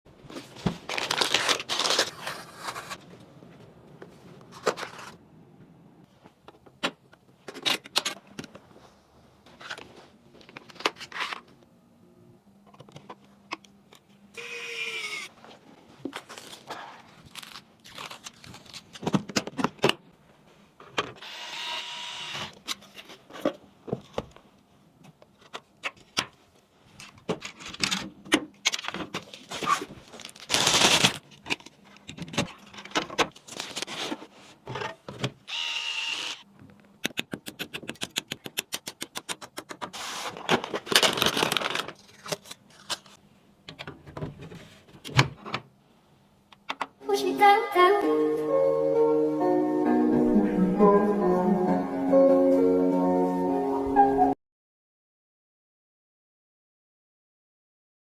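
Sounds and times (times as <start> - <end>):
packaging scraping and crinkling: 0.4 - 3.0, 16.2 - 19.1, 28.7 - 35.0, 39.9 - 43.2.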